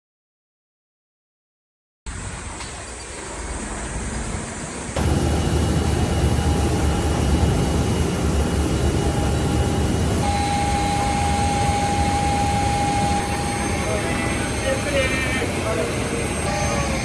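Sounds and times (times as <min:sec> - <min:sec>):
faint whining tones: 0:02.7 - 0:17.0
engine roar: 0:03.4 - 0:17.0.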